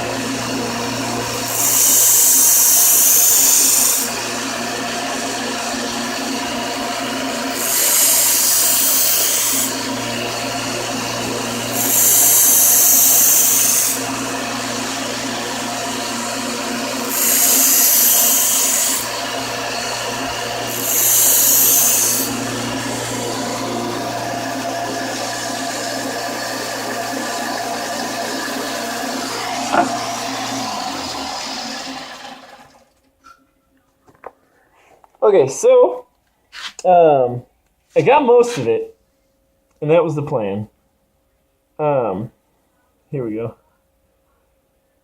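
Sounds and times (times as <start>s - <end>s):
power tool motor running: 0.0s - 32.8s
knife blade grinding hiss: 11.8s - 14.0s, 20.8s - 22.4s, 29.6s - 30.0s.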